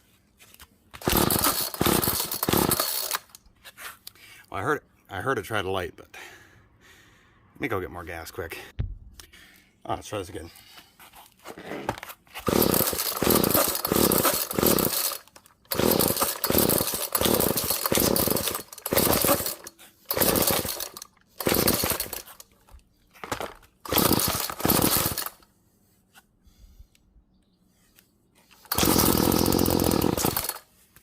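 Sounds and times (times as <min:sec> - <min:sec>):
string trimmer engine revving: 0:01.0 - 0:03.4, 0:12.4 - 0:22.4, 0:23.9 - 0:25.4, 0:28.6 - 0:30.6.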